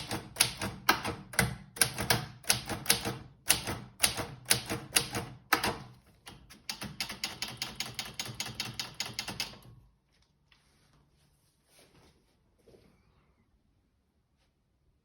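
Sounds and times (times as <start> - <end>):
typewriter key strikes: 0.0 - 9.7.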